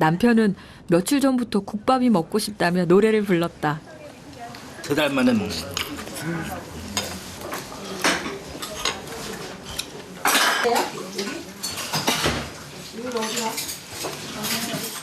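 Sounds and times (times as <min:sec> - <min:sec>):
spoons clinking against bowls: 0:09.7 - 0:12.3, 0:13.0 - 0:15.0.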